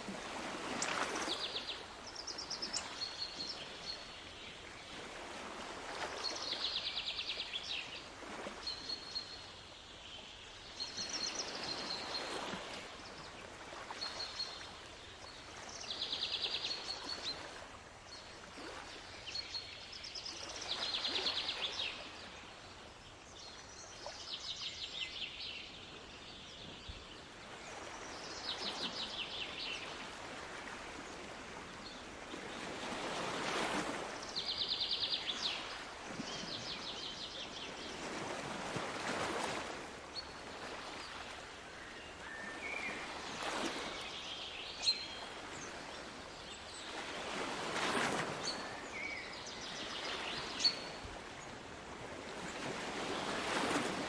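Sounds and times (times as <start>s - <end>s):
waves washing in: 0.0s - 9.0s, 27.4s - 54.0s.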